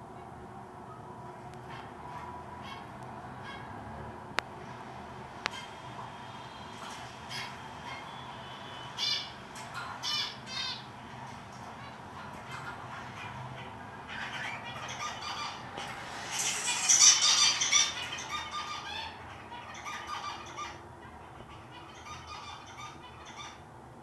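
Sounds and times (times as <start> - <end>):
birds chirping and chattering: 1.0 - 3.8, 4.5 - 23.9
shrill bird squawks: 7.3 - 9.4, 12.9 - 23.6.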